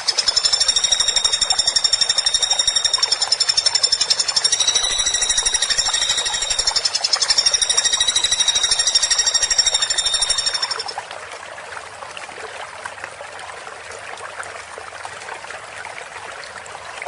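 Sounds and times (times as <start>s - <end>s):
woodpecker rattling call: 0.0s - 11.0s.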